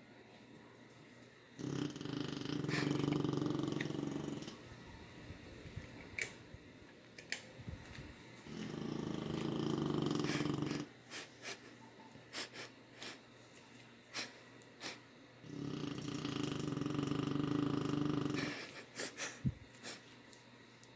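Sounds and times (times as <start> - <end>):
dog breathing quietly: 1.6 - 4.6, 8.5 - 11.7
dog snoring: 1.6 - 4.7, 8.5 - 10.9, 14.9 - 18.8.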